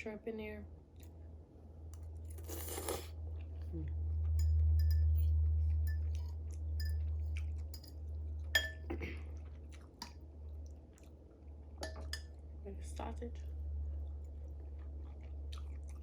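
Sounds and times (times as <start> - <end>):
steady low hum: 0.0 - 16.0
person chewing noodles: 2.2 - 12.6, 13.5 - 16.0
utensil clinking against bowl: 4.4 - 8.0, 8.6 - 8.9, 11.8 - 12.3.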